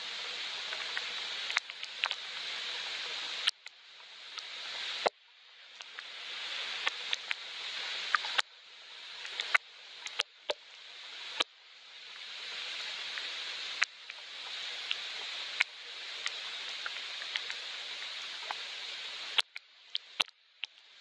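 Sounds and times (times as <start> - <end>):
rain hiss: 0.0 - 21.0
raindrops ticking: 0.4 - 3.7, 5.7 - 8.5, 9.1 - 11.5, 12.7 - 20.8.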